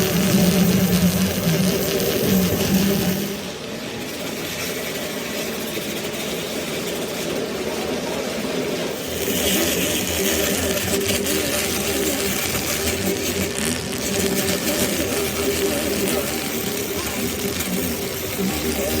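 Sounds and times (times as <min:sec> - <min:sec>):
loud hiss: 0:00.0 - 0:03.8, 0:09.0 - 0:19.0.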